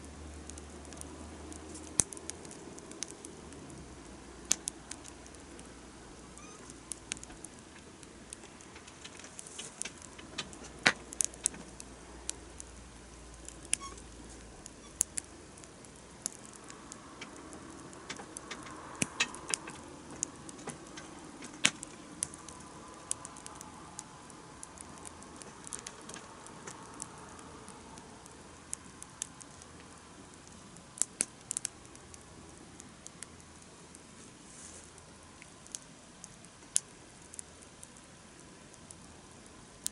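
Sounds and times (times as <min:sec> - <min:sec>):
wood campfire crackling: 0:00.0 - 0:39.9.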